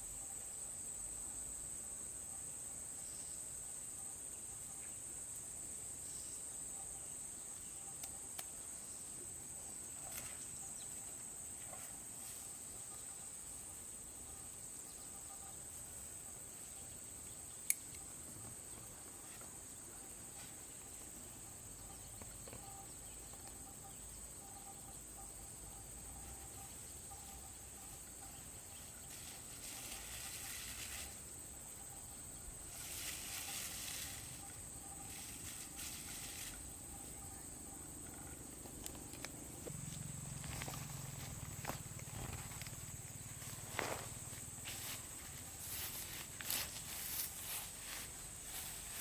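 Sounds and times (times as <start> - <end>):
high-pitched insect chorus: 0.0 - 49.0
hiss: 29.2 - 31.2.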